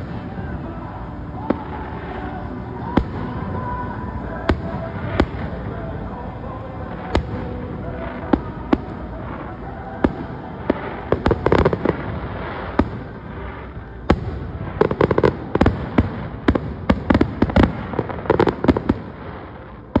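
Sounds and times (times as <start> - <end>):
fireworks cracking and popping: 0.0 - 20.0.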